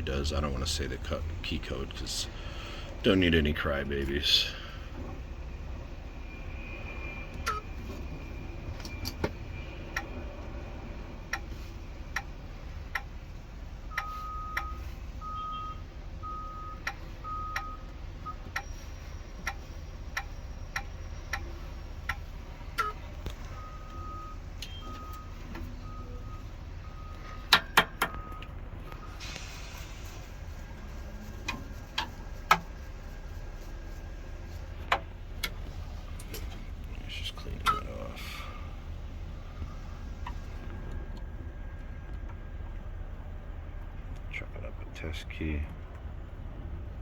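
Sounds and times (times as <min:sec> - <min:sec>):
low steady hum: 0:00.0 - 0:47.0
short electronic beeps: 0:06.3 - 0:07.8, 0:13.9 - 0:22.2, 0:22.8 - 0:27.5.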